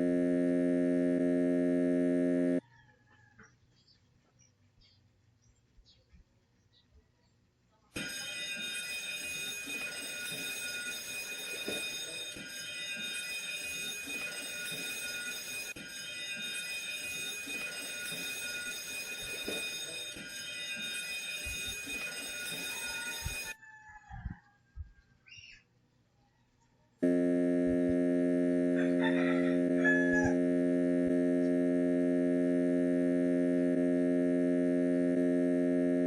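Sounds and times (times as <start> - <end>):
ship's alarm steady tone: 0.0 - 2.6, 8.0 - 23.6, 27.0 - 36.0.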